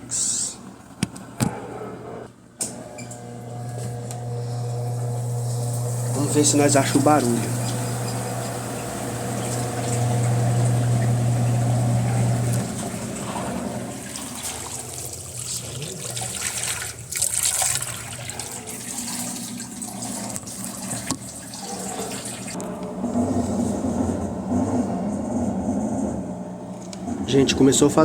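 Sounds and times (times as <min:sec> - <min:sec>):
washing machine hum: 0:00.0 - 0:28.0
water running: 0:02.7 - 0:24.6.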